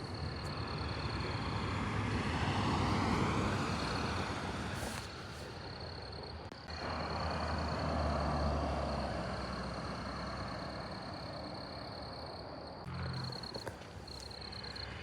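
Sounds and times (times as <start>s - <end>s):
vehicle driving past: 0.6s - 4.8s, 6.7s - 11.8s.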